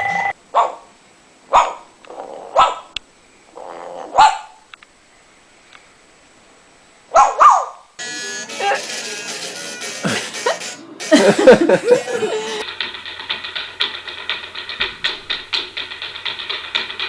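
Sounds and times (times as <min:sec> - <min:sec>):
dog-like barks: 0:00.5 - 0:00.9, 0:01.5 - 0:01.9, 0:02.6 - 0:02.9, 0:04.1 - 0:04.6, 0:07.1 - 0:07.8.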